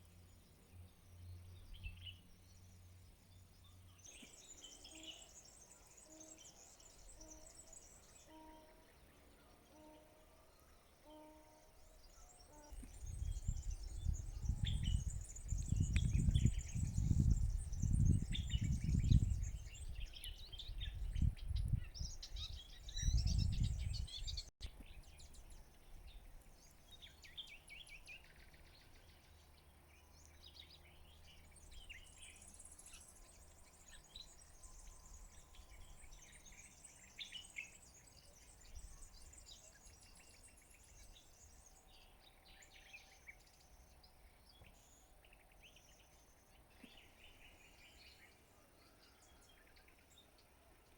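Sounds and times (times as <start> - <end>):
small birds chirping: 0.0 - 9.7, 11.6 - 50.9
wind rumble on microphone: 12.7 - 26.4.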